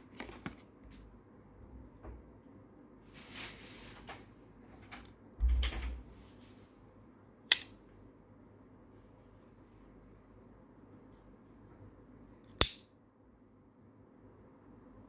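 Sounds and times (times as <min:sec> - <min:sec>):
sharp click: 0:07.5 - 0:07.8.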